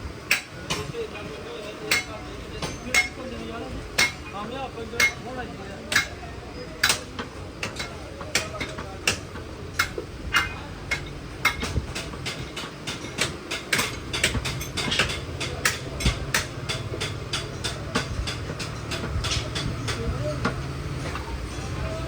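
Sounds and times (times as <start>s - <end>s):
sharp metal taps and knocks: 1.9s - 3.3s, 4.0s - 4.3s, 5.0s - 5.2s, 5.9s - 6.2s, 6.8s - 21.3s.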